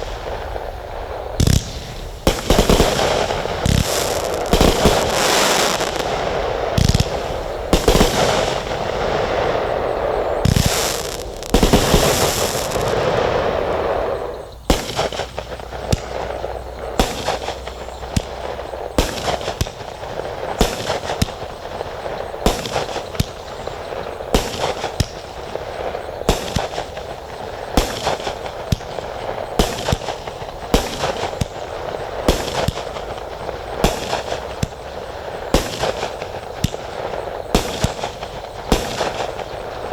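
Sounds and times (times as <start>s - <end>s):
fireworks thumps: 0.0s - 13.3s
fireworks crackling: 0.0s - 39.9s
sharp firework shots: 0.0s - 39.9s.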